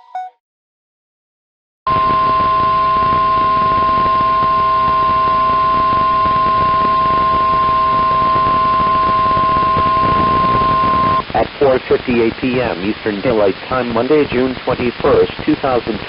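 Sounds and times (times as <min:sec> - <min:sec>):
loud steady alarm tone: 0:01.9 - 0:11.3
radio static hiss: 0:07.9 - 0:16.0.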